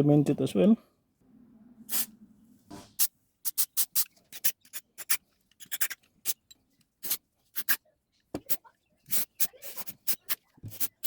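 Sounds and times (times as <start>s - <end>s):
short hiss bursts: 1.9s - 2.1s.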